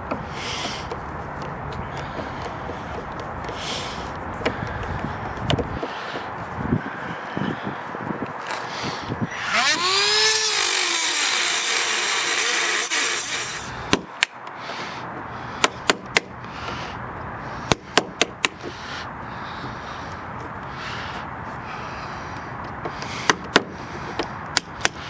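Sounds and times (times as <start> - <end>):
power drill spinning: 8.5 - 13.8.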